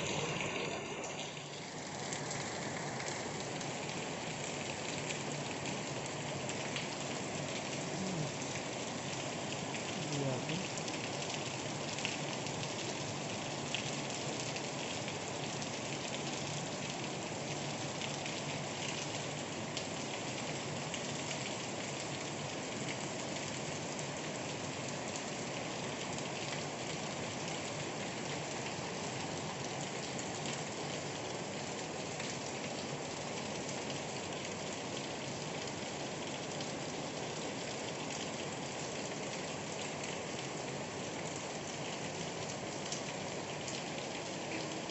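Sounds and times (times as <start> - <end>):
heavy rain falling: 0.0 - 44.9.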